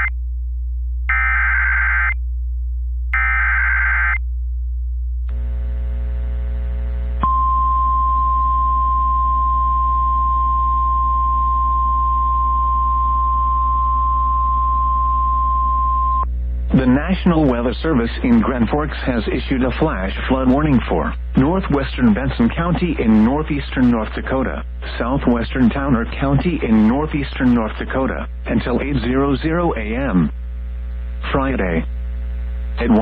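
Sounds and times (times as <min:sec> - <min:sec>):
steady low hum: 0:00.0 - 0:33.0
warbling data tone bursts: 0:01.1 - 0:02.2, 0:03.2 - 0:04.2
faint radio hiss: 0:05.3 - 0:07.2, 0:16.3 - 0:33.0
steady high alarm tone: 0:07.2 - 0:16.2.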